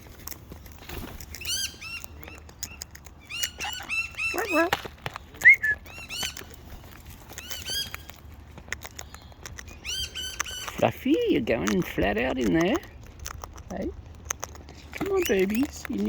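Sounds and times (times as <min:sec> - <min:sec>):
birds chirping: 0:00.8 - 0:16.0
loud sharp bird chirp: 0:03.2 - 0:04.7, 0:05.4 - 0:06.4, 0:07.4 - 0:08.1, 0:09.1 - 0:10.8.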